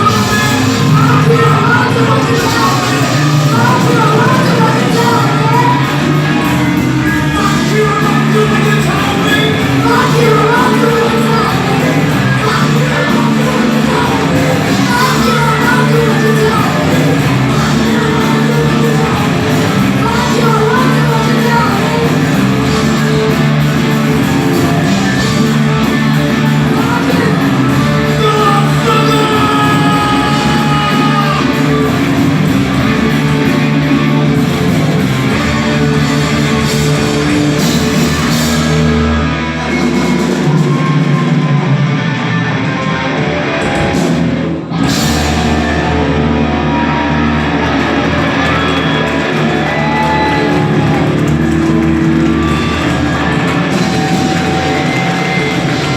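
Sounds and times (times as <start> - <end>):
sung and shouted vocals: 0.0 - 22.3, 26.7 - 31.8
live rock band playing: 0.0 - 55.9.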